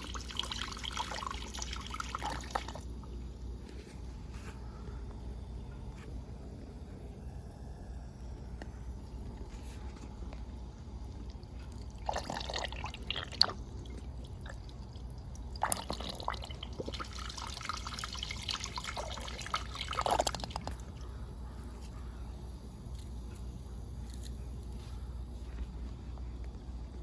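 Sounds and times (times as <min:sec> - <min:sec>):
toy toilet flushing: 0:00.0 - 0:02.9, 0:11.7 - 0:21.0.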